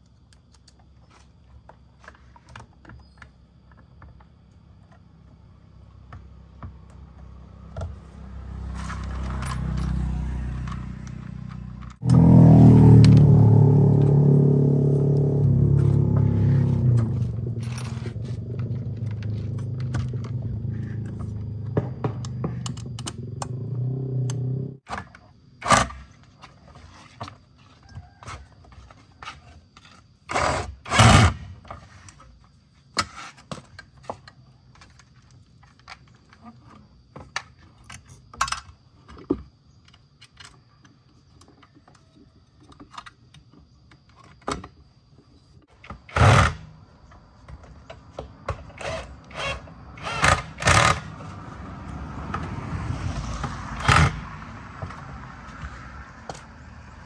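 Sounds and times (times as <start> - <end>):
tools and parts clicking and knocking: 8.8 - 12.0, 17.0 - 23.7, 37.2 - 44.8, 48.6 - 51.3.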